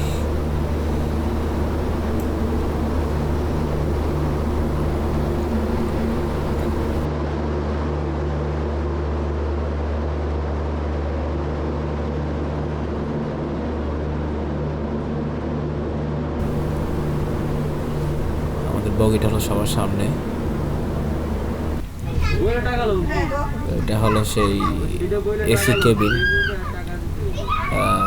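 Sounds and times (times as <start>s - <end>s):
diesel train engine idling: 0.0s - 7.1s, 16.4s - 28.0s.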